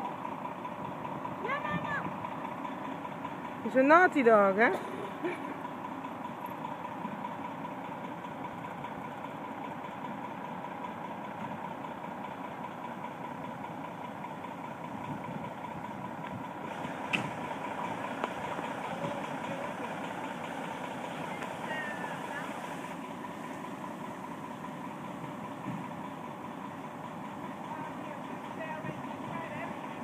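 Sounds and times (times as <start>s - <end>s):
engine idling: 0.0s - 30.0s.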